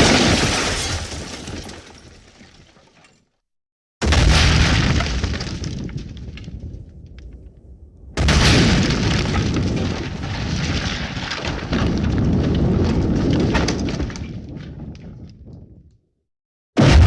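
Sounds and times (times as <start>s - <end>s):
crackling debris: 0.0s - 3.2s, 4.0s - 15.6s, 16.8s - 17.0s
explosion blast with deep rumble: 4.0s - 14.2s, 16.8s - 17.0s.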